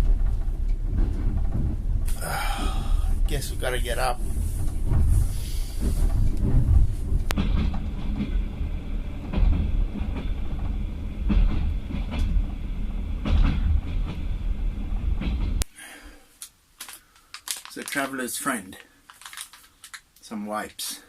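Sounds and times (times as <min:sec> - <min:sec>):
train rumbling on rails: 0:00.0 - 0:15.7
wheels clacking on rails: 0:00.0 - 0:15.7.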